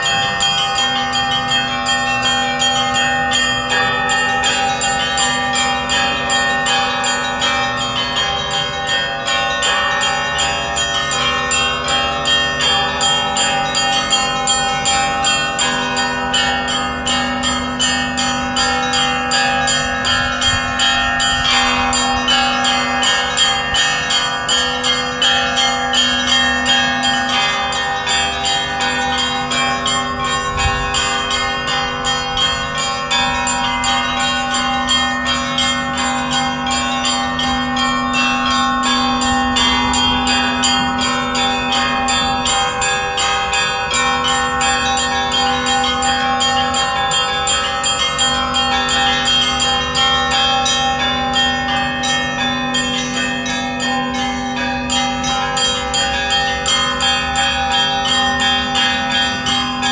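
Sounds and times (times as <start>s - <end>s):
large bells humming: 0.0s - 59.9s
small bells struck rapidly: 0.0s - 59.9s.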